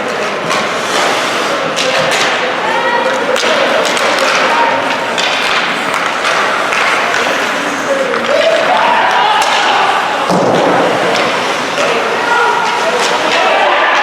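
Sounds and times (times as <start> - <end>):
crowd and players' voices: 0.0 - 14.0
hockey thuds and knocks on ice: 3.3 - 11.9.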